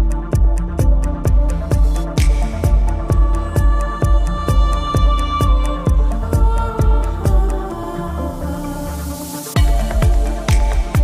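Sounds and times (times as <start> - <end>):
kick drum: 0.0 - 7.5, 9.6 - 11.0
electronic music: 0.0 - 11.0.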